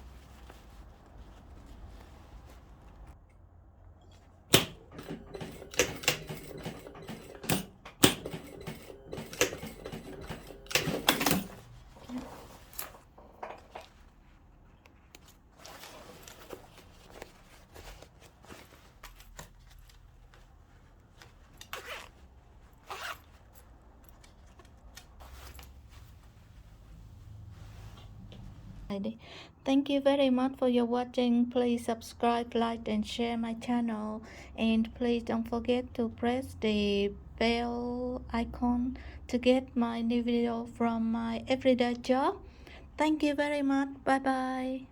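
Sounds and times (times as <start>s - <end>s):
sewing machine clacking: 4.5s - 11.8s.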